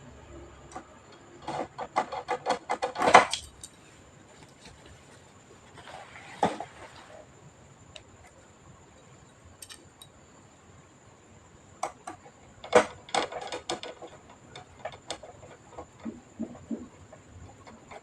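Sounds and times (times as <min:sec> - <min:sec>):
faint high whine: 0:00.0 - 0:01.4
clicks of computer parts handled: 0:01.5 - 0:03.8.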